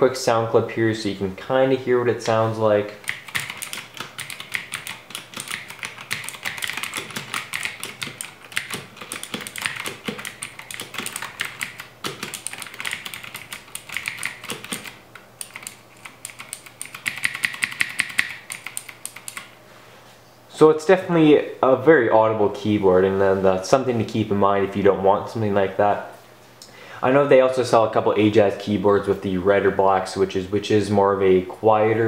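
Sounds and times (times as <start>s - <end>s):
mechanical keyboard typing: 3.0s - 19.5s.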